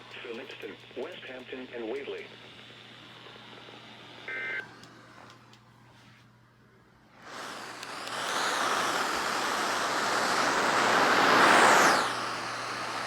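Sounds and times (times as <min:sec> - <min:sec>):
radio static hiss: 0:00.0 - 0:02.4.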